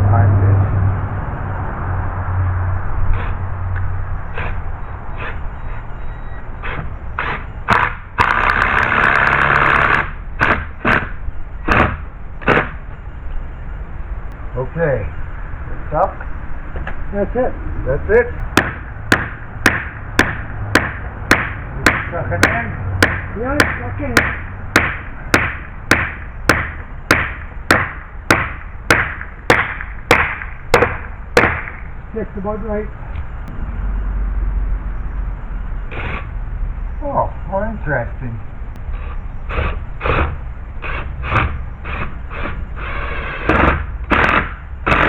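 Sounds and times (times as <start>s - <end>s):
hammer blows ringing: 4.2s - 13.0s, 18.1s - 34.2s, 38.8s - 45.0s.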